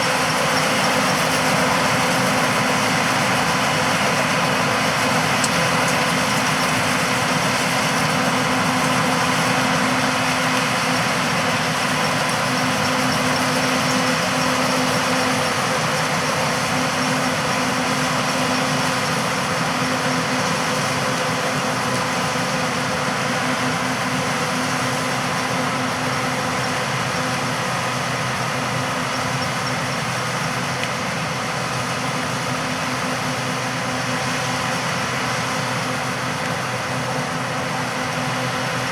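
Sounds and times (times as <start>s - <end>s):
combine engine hum: 0.0s - 38.9s.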